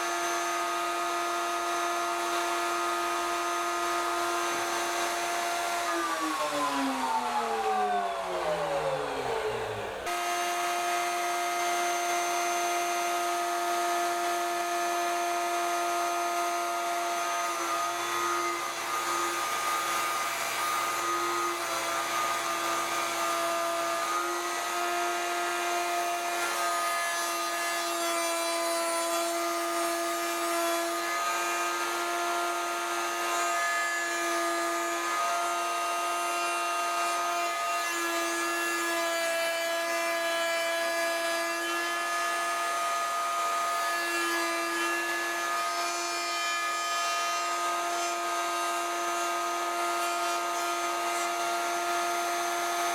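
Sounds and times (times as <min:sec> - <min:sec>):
router high whine: 0:00.0 - 0:28.0.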